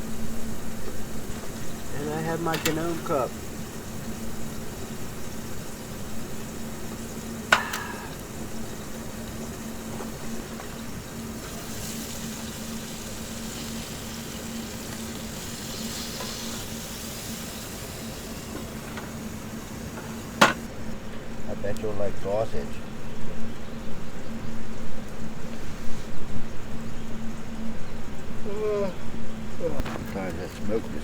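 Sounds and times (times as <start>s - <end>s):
sausage sizzling in a frying pan: 0.0s - 20.7s.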